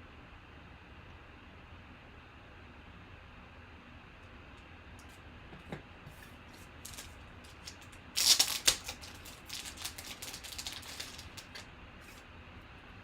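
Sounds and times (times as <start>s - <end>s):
cards being flipped: 6.1s - 12.2s.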